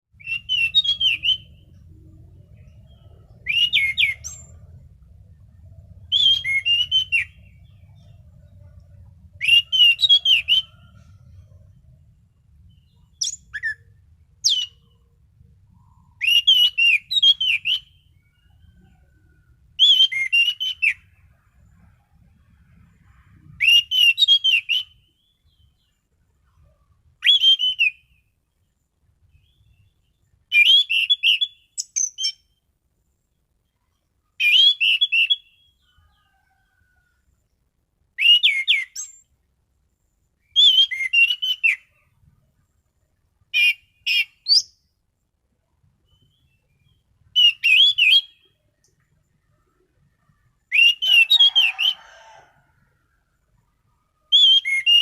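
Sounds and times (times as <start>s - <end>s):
thrush whistled song: 0.1s - 11.7s, 12.5s - 15.0s, 15.7s - 28.3s, 29.2s - 32.6s, 33.9s - 36.6s, 38.2s - 39.3s, 40.4s - 42.1s, 43.5s - 44.8s, 46.0s - 52.4s, 54.2s - 55.0s
faint low hum: 1.4s - 9.5s, 10.6s - 16.2s.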